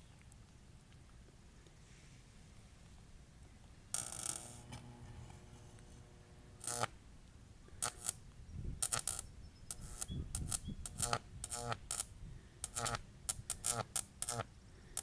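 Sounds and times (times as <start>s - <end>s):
electrical crackle and buzz: 3.9s - 7.0s
loud electrical crack: 3.9s - 7.0s.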